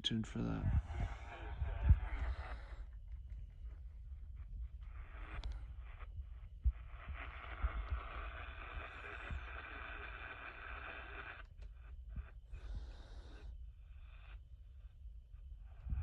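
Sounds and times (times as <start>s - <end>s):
radio static hiss: 0.3s - 2.9s, 4.9s - 14.4s.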